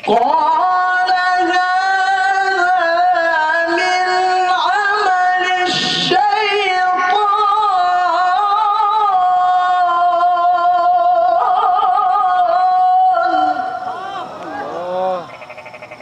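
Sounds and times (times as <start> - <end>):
man chanting melodically: 13.2 - 15.4.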